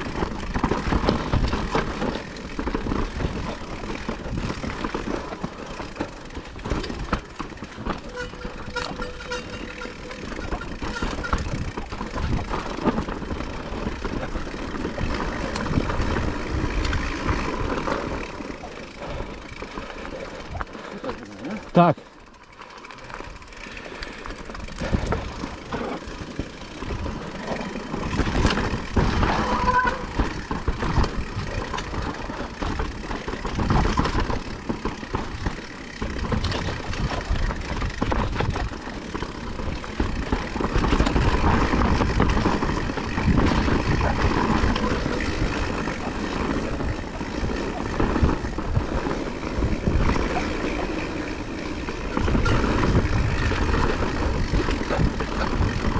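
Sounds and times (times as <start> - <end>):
wind buffeting microphone: 10.8 - 17.7, 39.5 - 55.9.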